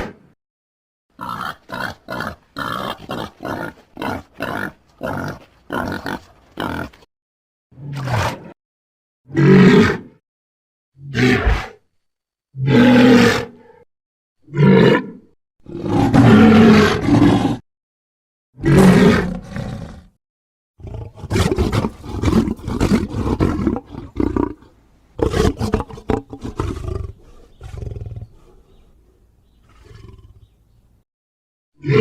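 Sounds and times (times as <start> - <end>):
choppy growls and grunts: 20.8 - 28.6.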